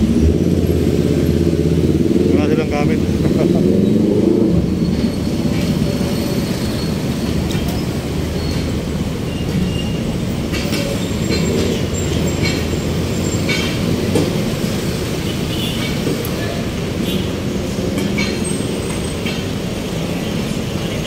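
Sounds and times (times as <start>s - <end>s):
train rumbling: 0.0s - 21.0s
wheels squealing on rail: 3.1s - 21.0s.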